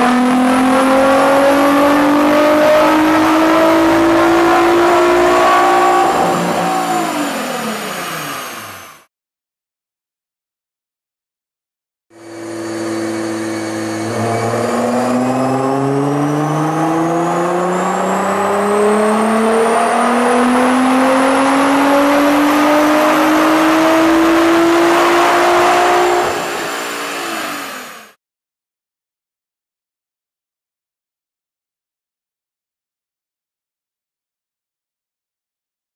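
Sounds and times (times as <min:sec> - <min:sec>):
car engine full-throttle pull: 0:00.0 - 0:09.1, 0:12.2 - 0:28.2.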